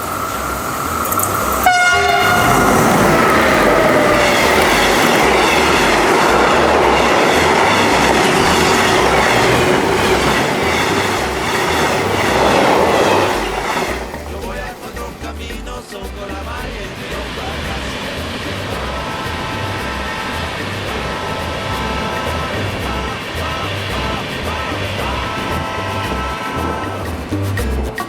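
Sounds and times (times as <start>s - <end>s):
train wheels rumbling on rails: 0.0s - 15.1s
train horn: 1.6s - 13.3s.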